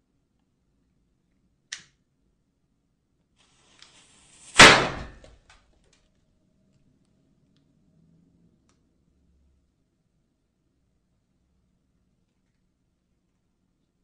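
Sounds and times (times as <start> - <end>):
firecracker fizzing hiss: 3.4 - 5.2
firecracker bang: 3.9 - 5.4.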